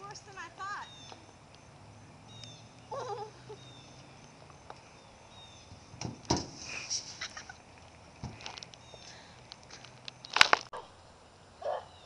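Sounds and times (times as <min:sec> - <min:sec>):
sharp thump with a knock: 0:06.0 - 0:06.7.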